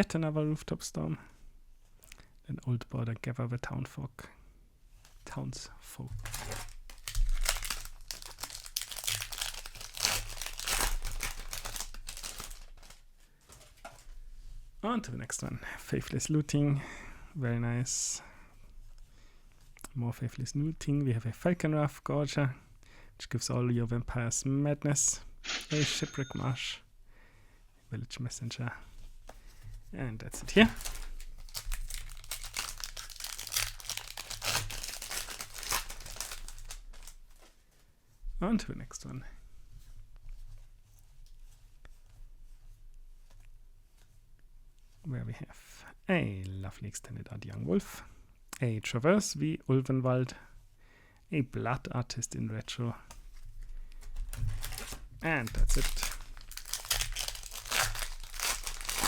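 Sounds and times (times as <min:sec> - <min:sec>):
foil wrapper crinkling: 0:06.2 - 0:13.1, 0:30.5 - 0:37.5, 0:54.1 - 0:59.0.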